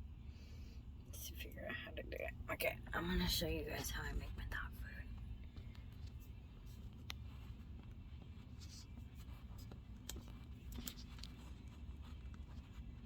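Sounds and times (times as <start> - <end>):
low steady hum: 0.0 - 13.0
scratchy rustles: 5.0 - 13.0.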